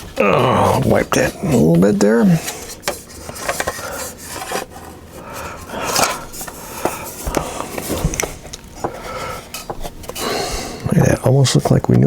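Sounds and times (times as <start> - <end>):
plastic parts scraping: 0.0 - 12.0
plastic parts clicking: 2.8 - 4.6.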